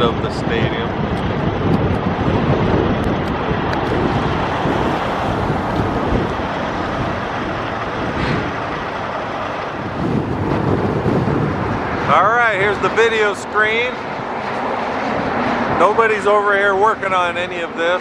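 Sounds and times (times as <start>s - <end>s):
strong wind buffeting microphone: 0.0s - 18.0s.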